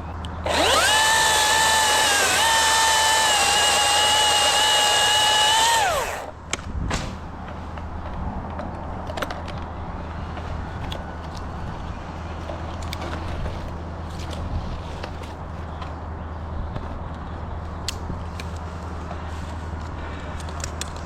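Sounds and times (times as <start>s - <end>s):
chainsaw revving: 0.5s - 6.3s.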